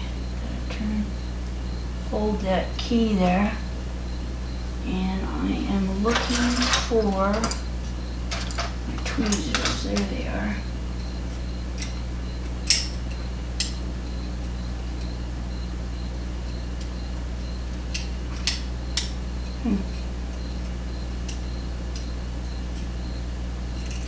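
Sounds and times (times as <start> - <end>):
steady low hum: 0.0 - 24.0
small metal clicks and clinks: 6.0 - 7.7, 8.3 - 10.3, 23.8 - 24.0.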